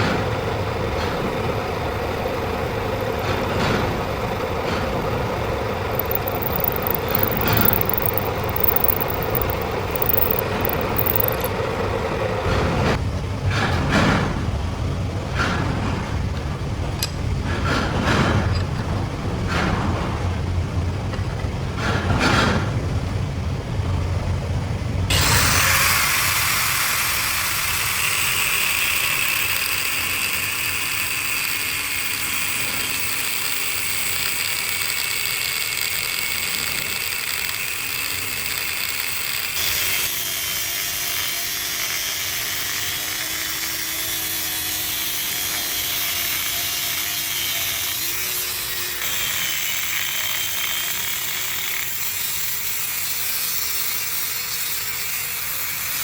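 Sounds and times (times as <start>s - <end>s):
power tool grinding steel: 2.0s - 11.6s, 25.1s - 56.0s.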